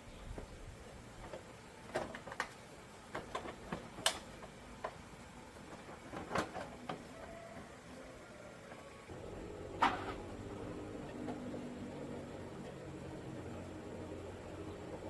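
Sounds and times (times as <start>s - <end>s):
hand tools clicking and tapping: 1.2s - 7.7s.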